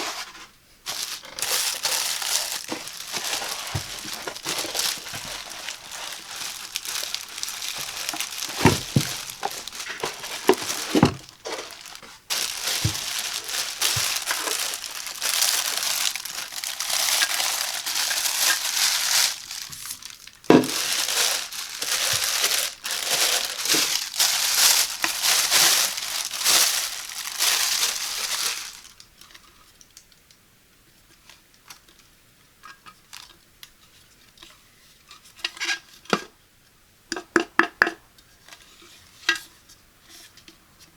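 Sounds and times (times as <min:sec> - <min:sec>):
packaging crinkling: 0:00.8 - 0:29.5.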